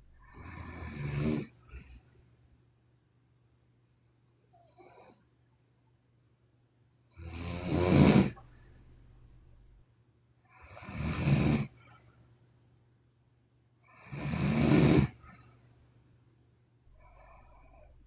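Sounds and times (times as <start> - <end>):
woman snoring: 0.2 - 1.8, 7.2 - 8.4, 14.0 - 15.2.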